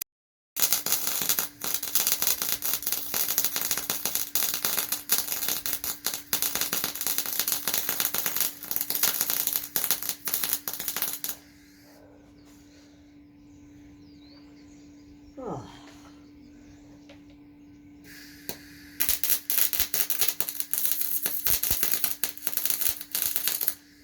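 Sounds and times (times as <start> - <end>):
welding arc crackling sizzle: 0.6 - 11.5, 18.1 - 24.0
steady hum: 1.2 - 24.0.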